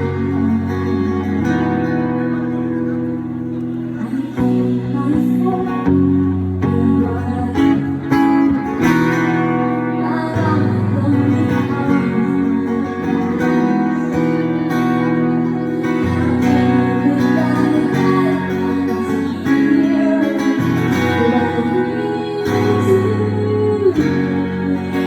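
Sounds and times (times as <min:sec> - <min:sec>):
live acoustic guitar song: 0:00.0 - 0:25.0.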